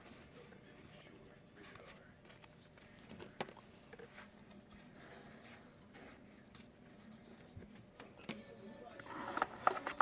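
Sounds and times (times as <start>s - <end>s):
trading cards rustling: 9.0s - 10.0s.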